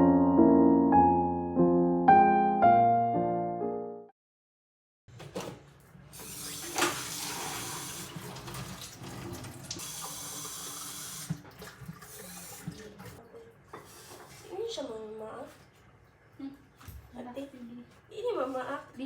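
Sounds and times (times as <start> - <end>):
water running from tap: 6.1 - 15.9.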